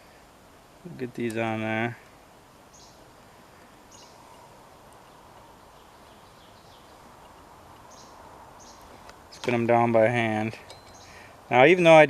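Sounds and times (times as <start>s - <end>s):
low steady hiss: 0.0s - 12.0s
faint high chirps: 10.6s - 11.3s.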